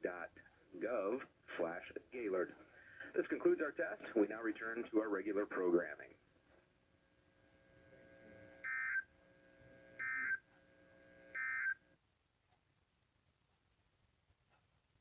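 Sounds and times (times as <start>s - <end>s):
faint steady hum: 0.0s - 15.0s
short data signal bursts: 8.6s - 9.1s, 10.0s - 10.4s, 11.3s - 11.8s.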